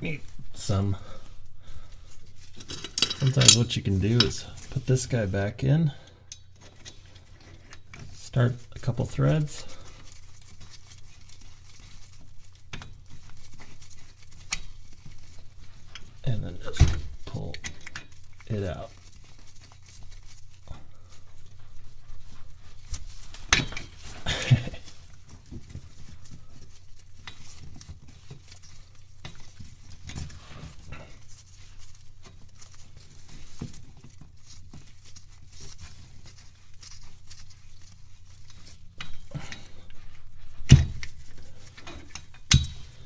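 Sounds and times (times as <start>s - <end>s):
metallic clicks and scrapes of tools: 2.4s - 4.8s.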